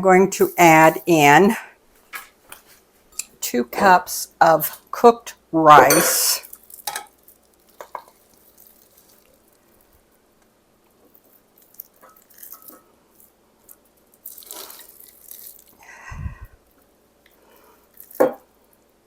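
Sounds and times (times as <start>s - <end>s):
rice squishing: 6.4s - 10.1s, 10.9s - 16.0s.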